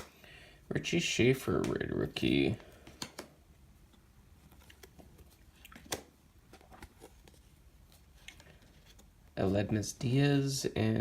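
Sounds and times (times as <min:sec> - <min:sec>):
cards clicking and rustling: 0:04.4 - 0:09.2.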